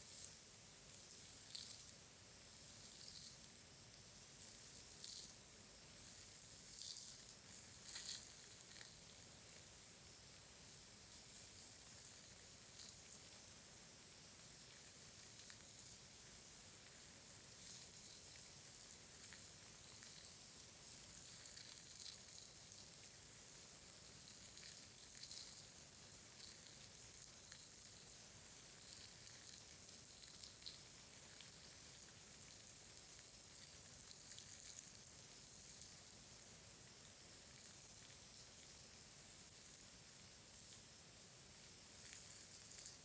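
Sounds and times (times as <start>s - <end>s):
soft crackle of tiny clicks: 11.1s - 13.5s, 14.4s - 40.8s, 41.6s - 43.0s.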